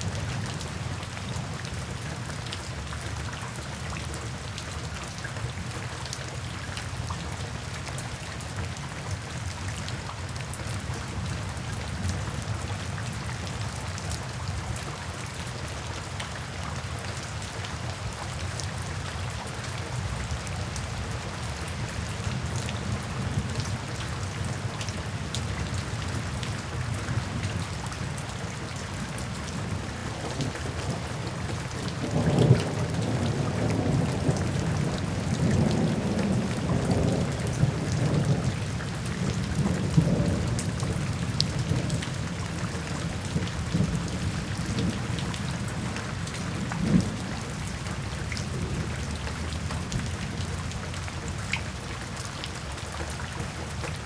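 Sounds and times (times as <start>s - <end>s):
steady rain falling: 0.0s - 54.0s
rumbling thunder: 29.7s - 47.3s.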